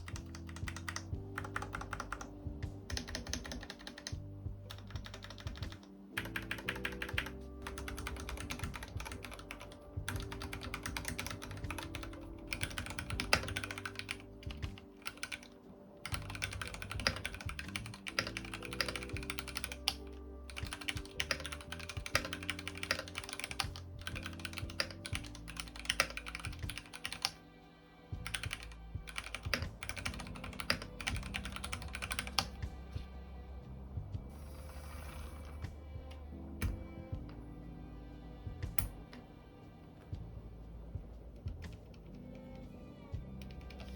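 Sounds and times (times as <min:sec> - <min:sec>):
mechanical keyboard typing: 0:00.0 - 0:27.4, 0:28.2 - 0:32.6
background music: 0:00.0 - 0:43.9.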